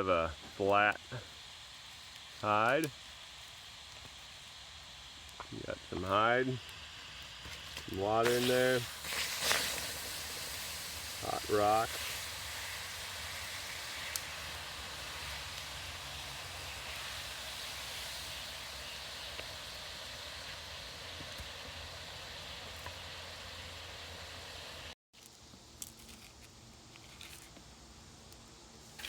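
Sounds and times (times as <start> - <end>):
water hissing around hot rock: 0.0 - 25.4.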